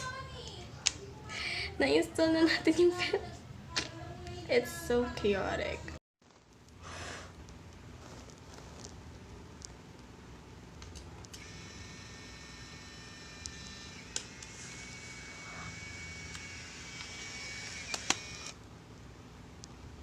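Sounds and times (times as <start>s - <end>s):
camera motor whirring: 11.3s - 18.6s
camera sharp clicks: 16.3s - 18.6s.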